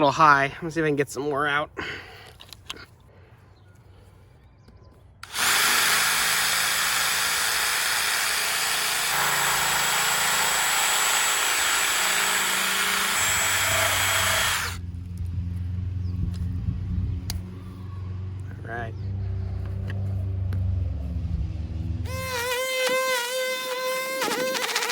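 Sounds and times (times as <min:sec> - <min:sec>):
power cutting tool cutting pipe: 0:05.2 - 0:14.8, 0:22.1 - 0:24.9.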